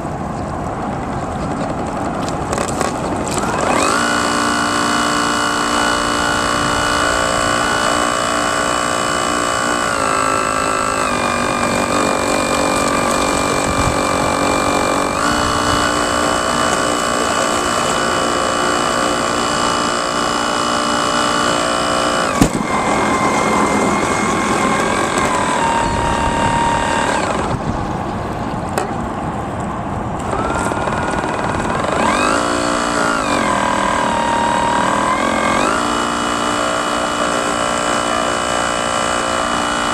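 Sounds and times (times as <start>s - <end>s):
model boat motors whining: 0.8s - 39.9s
sharp knock: 22.4s - 22.6s.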